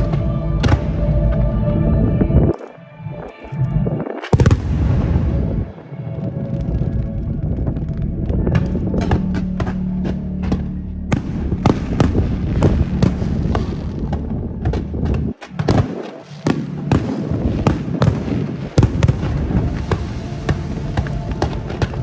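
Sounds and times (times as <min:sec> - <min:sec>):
fireworks bangs and crackles: 0:04.3 - 0:05.8, 0:11.1 - 0:22.0.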